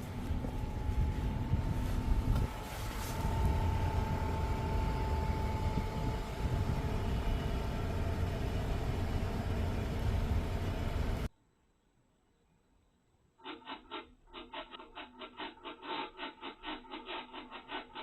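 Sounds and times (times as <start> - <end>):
low grinding buzz: 0.0 - 11.3
thin whine: 0.0 - 11.3.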